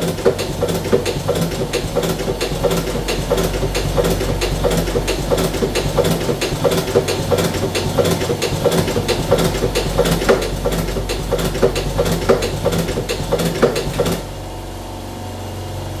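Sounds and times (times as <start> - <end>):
machine clattering: 0.0 - 14.4
steady low hum: 0.0 - 16.0.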